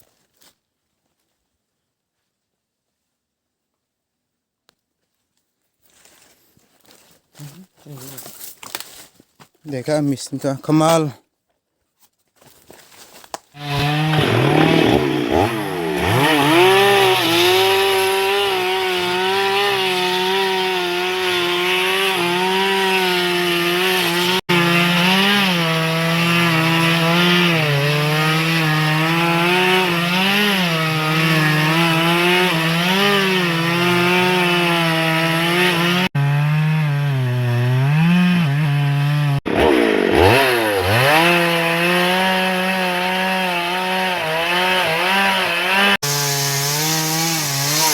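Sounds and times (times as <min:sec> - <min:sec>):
chainsaw cutting wood: 0:13.4 - 0:47.9.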